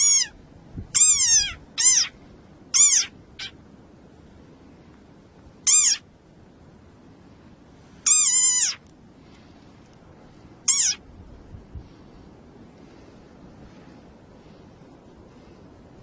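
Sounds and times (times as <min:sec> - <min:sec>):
animal high-pitched calls: 0:00.0 - 0:03.6, 0:05.6 - 0:06.1, 0:08.0 - 0:08.9, 0:10.6 - 0:11.1.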